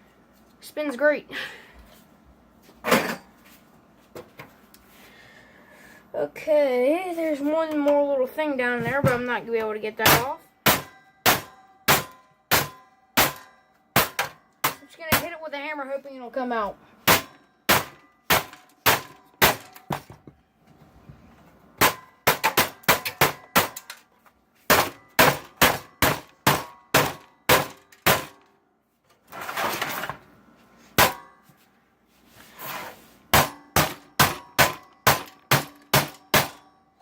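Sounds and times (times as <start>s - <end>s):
hammer striking metal: 10.0s - 15.3s, 17.0s - 20.1s, 21.8s - 24.0s, 24.7s - 28.4s, 31.0s - 31.4s, 33.3s - 36.8s.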